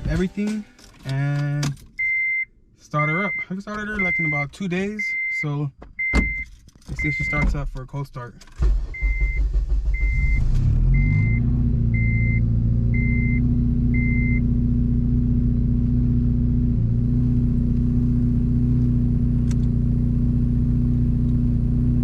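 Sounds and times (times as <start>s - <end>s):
dashboard chime beeping: 2.0s - 7.4s
car engine idling: 8.6s - 22.0s.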